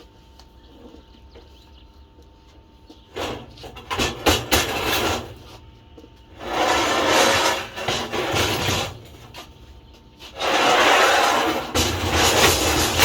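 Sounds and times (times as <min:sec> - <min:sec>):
metal knocks and clanks: 0:03.2 - 0:05.5, 0:06.4 - 0:09.5, 0:10.5 - 0:13.0
rough scraping of metal: 0:03.2 - 0:05.6, 0:06.3 - 0:09.5, 0:10.2 - 0:13.0.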